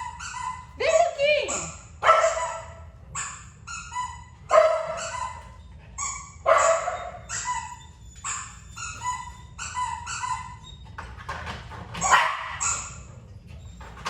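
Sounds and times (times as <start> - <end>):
dog barking: 0.0 - 3.4, 4.0 - 5.5, 6.4 - 7.7, 12.0 - 13.0.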